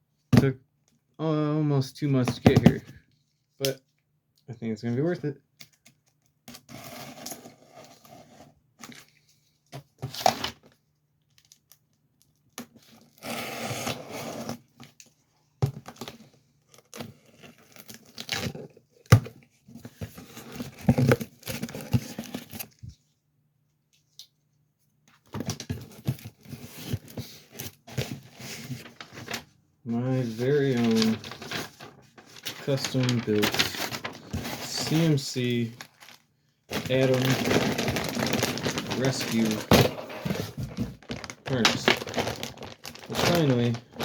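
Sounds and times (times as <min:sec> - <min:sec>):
packaging crinkling and rustling: 0:25.3 - 0:44.0.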